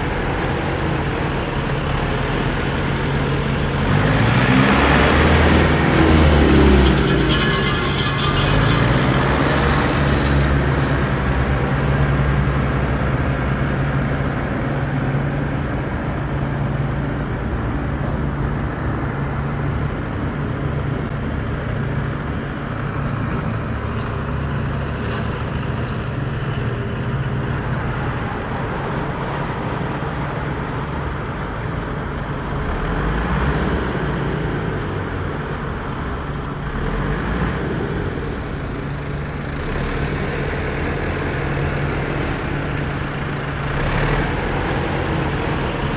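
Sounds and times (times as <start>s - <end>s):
remote-control vehicles droning: 0.0s - 13.3s.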